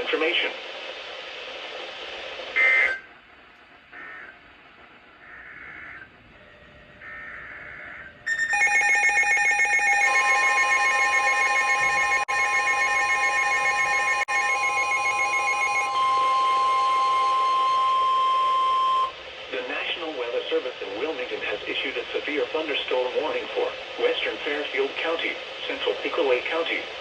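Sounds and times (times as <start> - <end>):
steady warning alarm tone: 6.3 - 19.2
shrill electronic alert alarm: 7.0 - 19.2.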